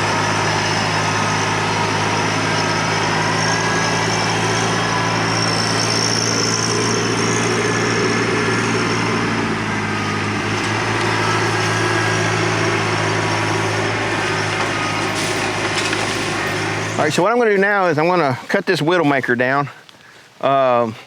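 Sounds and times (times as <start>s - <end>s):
tractor diesel engine running: 0.0s - 19.6s.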